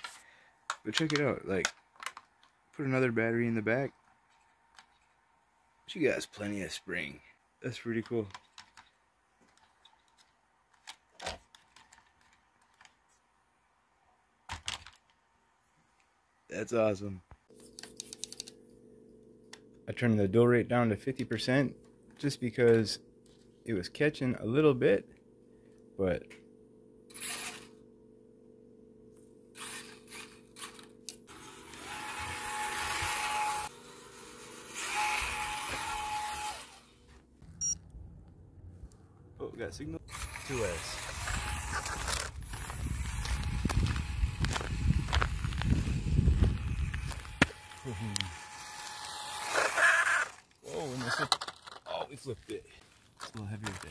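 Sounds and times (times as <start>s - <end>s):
high motor whine: 24.4s - 38.4s, 39.8s - 50.5s
rc car drivetrain whirring: 27.1s - 27.8s, 29.6s - 36.9s, 40.1s - 51.8s.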